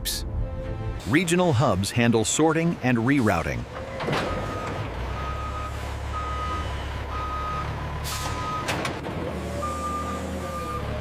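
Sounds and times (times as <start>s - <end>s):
truck engine running: 1.0s - 11.0s
truck reversing alarm beeping: 3.2s - 11.0s.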